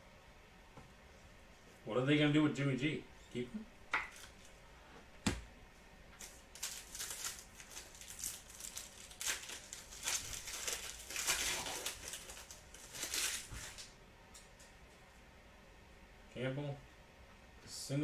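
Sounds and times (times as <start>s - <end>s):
packaging crinkling and rustling: 6.2s - 14.0s.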